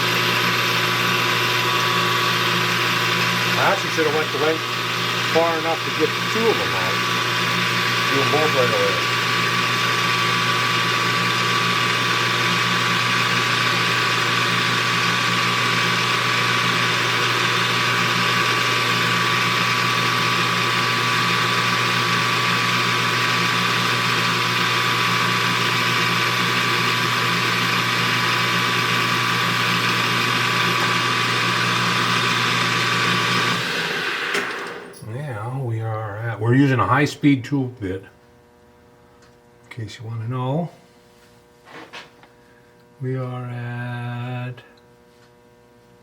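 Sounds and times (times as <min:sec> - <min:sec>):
lathe tool bit cutting: 0:00.0 - 0:34.9
metal lathe motor hum: 0:00.0 - 0:35.1.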